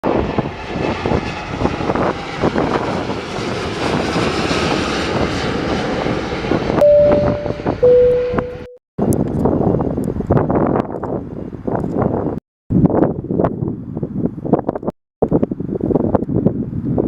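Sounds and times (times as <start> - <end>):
aircraft engine rush: 0.0 - 14.8
loud steady tones: 6.8 - 8.8.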